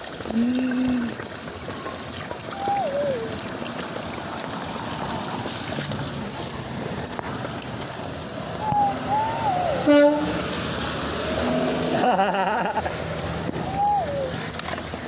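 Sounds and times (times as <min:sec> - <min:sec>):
steady rain: 0:00.0 - 0:15.0
water running and trickling: 0:00.0 - 0:15.0
wavering squeal falling in pitch: 0:02.5 - 0:03.4, 0:08.6 - 0:10.4, 0:13.6 - 0:14.4.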